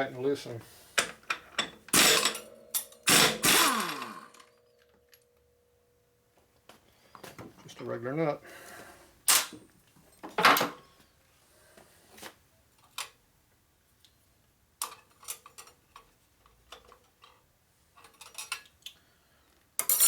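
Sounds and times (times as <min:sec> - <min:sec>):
metal tools clicking and clinking: 0:01.0 - 0:05.5, 0:18.0 - 0:18.8, 0:19.8 - 0:20.0.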